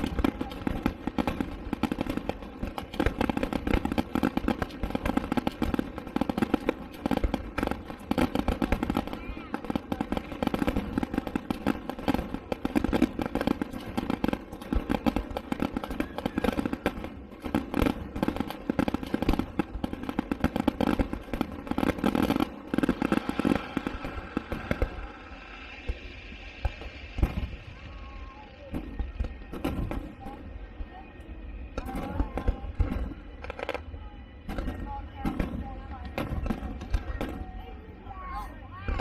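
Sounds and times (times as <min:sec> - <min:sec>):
fireworks crackling and popping: 0:00.0 - 0:39.0
steady tonal hum: 0:22.5 - 0:39.0.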